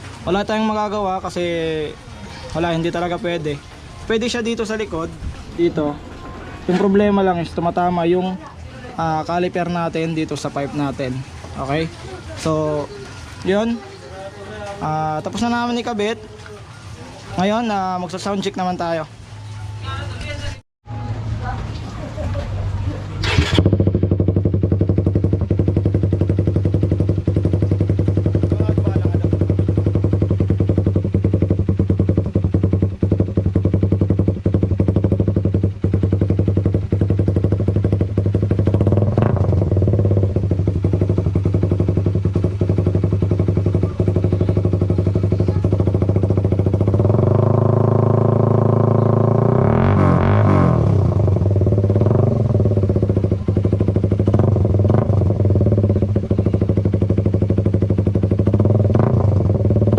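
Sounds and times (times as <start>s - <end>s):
motorcycle engine idling and revving: 0.0s - 59.9s.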